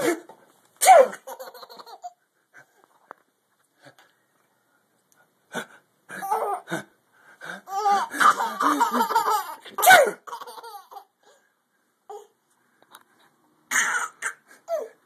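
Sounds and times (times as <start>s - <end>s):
person sneezing: 0.0s - 1.2s, 9.7s - 10.2s.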